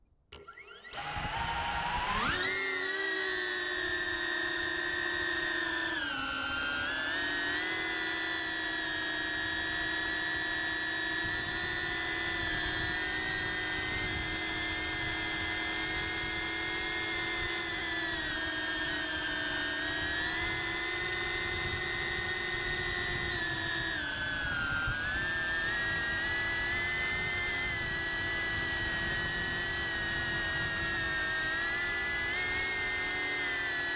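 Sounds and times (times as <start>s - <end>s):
drone motors whining: 0.3s - 33.9s.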